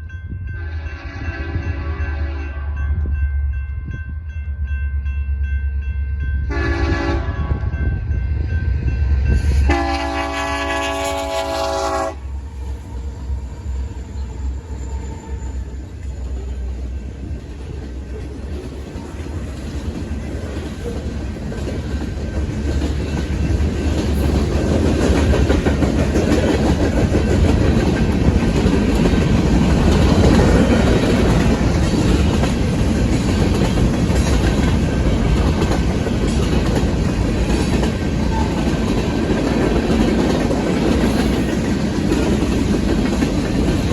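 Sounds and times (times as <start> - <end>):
diesel train rumbling: 0.0 - 43.9
locomotive air horn: 0.6 - 2.7, 6.5 - 7.7, 9.7 - 12.3
wheels clicking over rail joints: 17.2 - 43.9.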